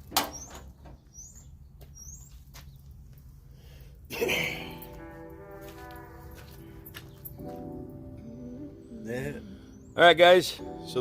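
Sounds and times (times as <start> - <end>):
music of held chords: 4.2 - 11.0.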